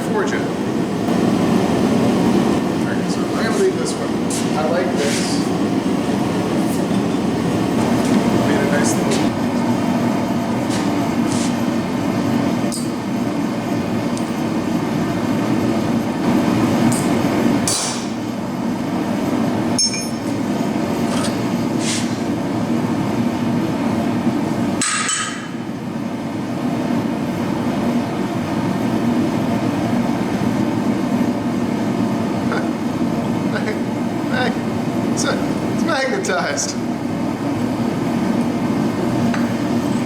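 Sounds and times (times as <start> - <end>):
forge burner roar: 0.0 - 40.0
metal clinks and taps: 19.8 - 20.3
ringing hammer strike: 19.8 - 20.3.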